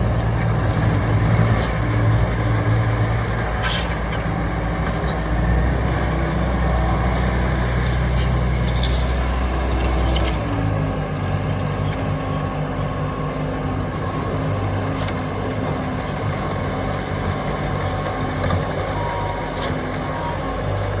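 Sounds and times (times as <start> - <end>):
diesel engine running: 0.0 - 21.0.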